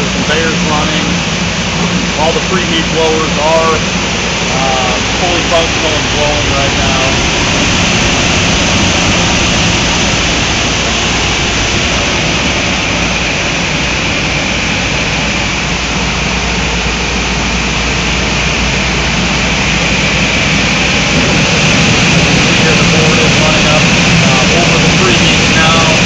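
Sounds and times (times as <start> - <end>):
blowers rushing air: 0.0 - 26.0
low machine hum: 0.0 - 26.0.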